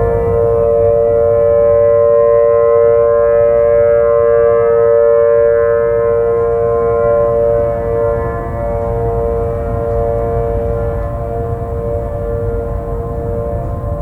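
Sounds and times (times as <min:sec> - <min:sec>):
low rumble: 0:00.0 - 0:02.2
steady tone with overtones: 0:00.0 - 0:14.0.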